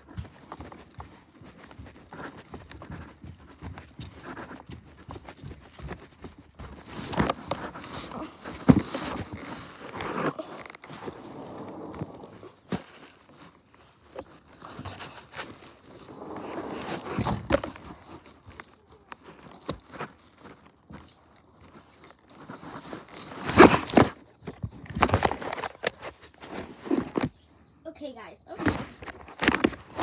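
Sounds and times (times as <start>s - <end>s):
footsteps: 0.0s - 11.3s
rustling: 0.0s - 27.5s, 28.2s - 30.0s.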